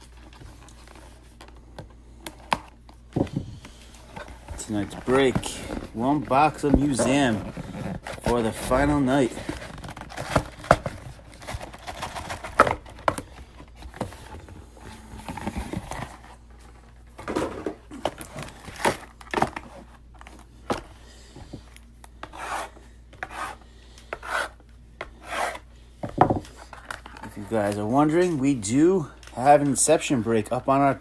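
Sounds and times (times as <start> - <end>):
cardboard and wrapper rustling: 0.0 - 21.9.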